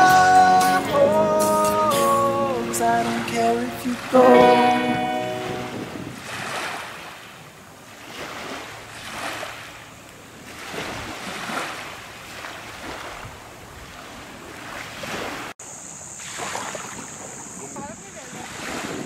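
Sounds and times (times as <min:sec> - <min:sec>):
wind: 0:00.0 - 0:19.0
sea water washing and splashing: 0:02.9 - 0:15.5, 0:16.2 - 0:17.4, 0:18.1 - 0:19.0.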